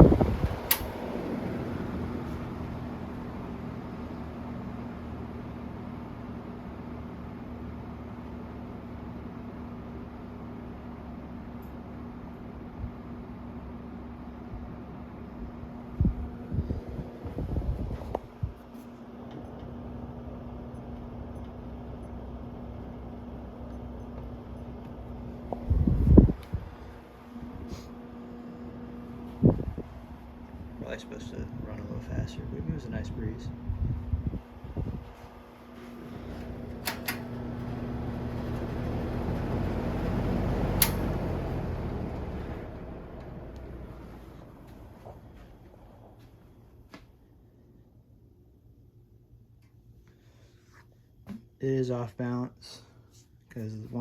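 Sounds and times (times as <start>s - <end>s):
box fan whooshing air: 0.0s - 23.7s, 24.3s - 47.0s
low motor hum: 0.0s - 49.6s
sharp clicks: 0.7s - 0.9s, 40.8s - 41.0s.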